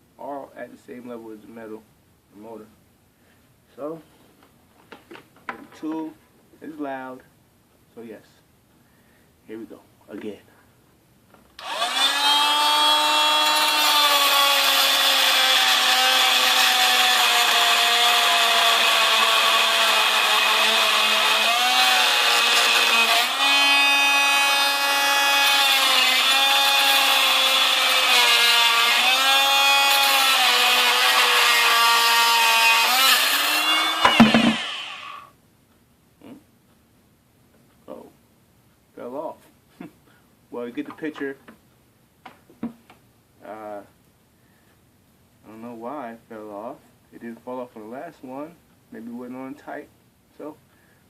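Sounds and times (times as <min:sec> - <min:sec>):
power tool whining: 0:11.6 - 0:35.3.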